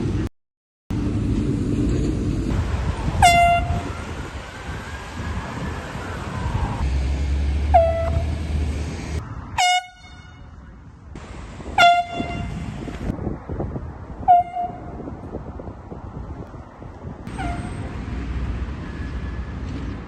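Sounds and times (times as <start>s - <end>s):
air horn blasts: 3.2s - 4.0s, 7.7s - 8.4s, 9.6s - 10.6s, 11.7s - 12.8s, 14.3s - 15.0s, 17.3s - 17.9s.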